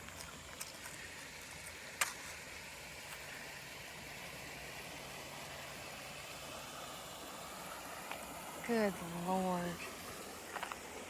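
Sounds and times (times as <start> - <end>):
creek water rushing: 0.0 - 11.0.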